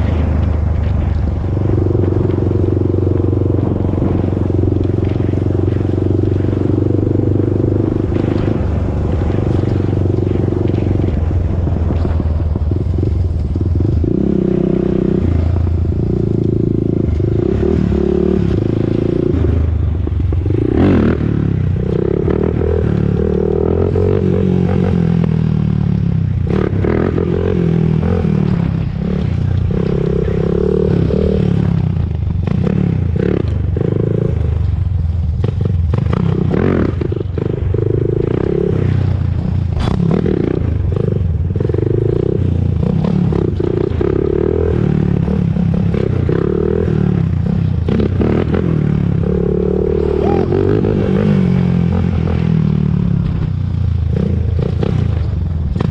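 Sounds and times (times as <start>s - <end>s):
atv engine revving: 0.0s - 55.9s.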